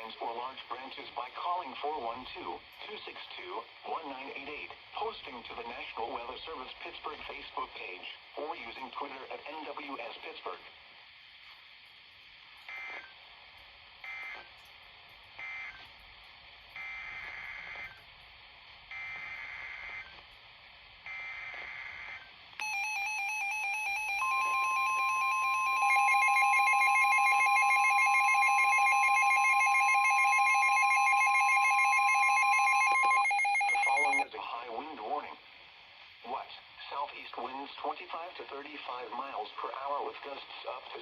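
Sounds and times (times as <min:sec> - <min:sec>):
steady warning alarm tone: 0:12.6 - 0:13.1, 0:14.0 - 0:14.5, 0:15.4 - 0:15.9, 0:16.7 - 0:18.1, 0:18.9 - 0:20.2, 0:21.1 - 0:34.3
warbling radio alarm: 0:14.0 - 0:14.5, 0:15.4 - 0:15.9, 0:16.8 - 0:18.0, 0:18.9 - 0:20.2, 0:21.1 - 0:34.2
digital data bursts: 0:21.1 - 0:34.2.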